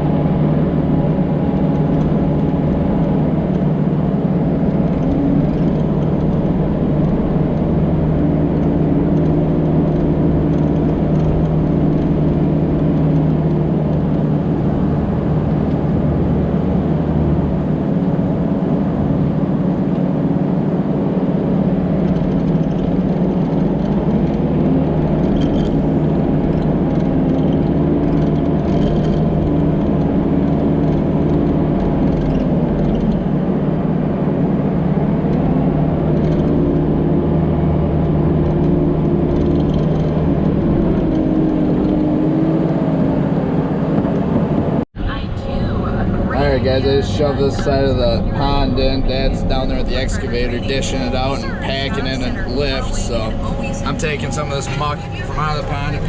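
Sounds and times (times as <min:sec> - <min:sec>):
diesel engine running under load: 0:00.0 - 0:56.0.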